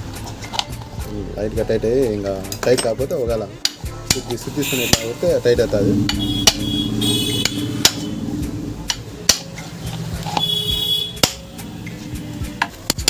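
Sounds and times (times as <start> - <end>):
metal parts knocking and clinking: 2.5 - 4.4
metal scraping and ringing: 4.3 - 11.3
steady low hum: 5.1 - 10.3.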